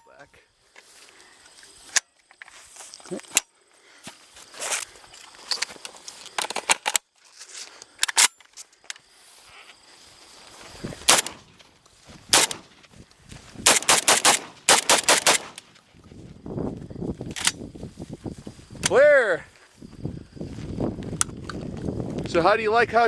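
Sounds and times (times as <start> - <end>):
rapid gunfire: 11.1 - 11.4, 12.4 - 12.6, 13.7 - 15.6
single gunshots: 11.1 - 11.4, 12.3 - 12.6, 13.6 - 15.6.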